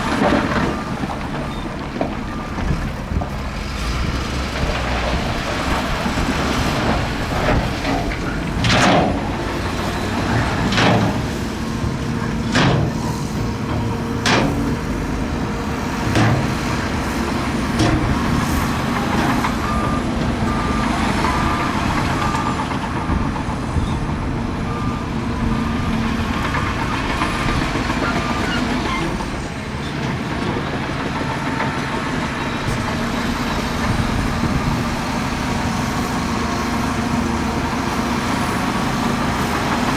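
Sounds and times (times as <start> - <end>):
heavy diesel machinery running: 0.0 - 39.9
reversing alarm beeping: 17.9 - 24.0, 24.6 - 29.1.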